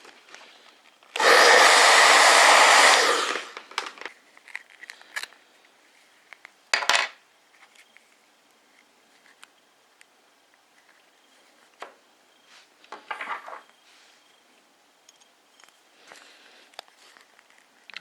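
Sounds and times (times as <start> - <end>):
loud burst of noise: 1.2 - 3.6
hot-air blower running: 1.2 - 3.8.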